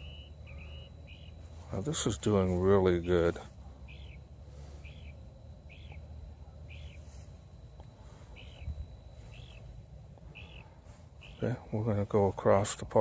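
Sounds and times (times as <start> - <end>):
animal high chirp: 0.0 - 1.6, 2.6 - 7.3, 8.0 - 9.7, 10.3 - 11.7
faint low outdoor rumble: 0.0 - 13.0.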